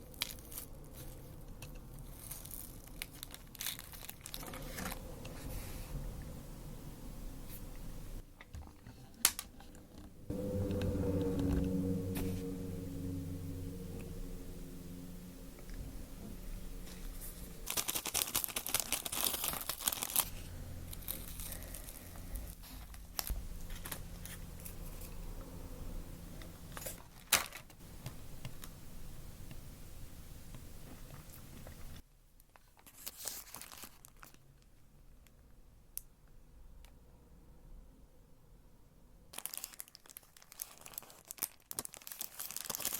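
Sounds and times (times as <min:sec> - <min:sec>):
plastic packaging crinkling and tearing: 0:00.0 - 0:05.0, 0:16.9 - 0:25.1, 0:26.8 - 0:27.8, 0:32.4 - 0:34.7, 0:39.3 - 0:42.9.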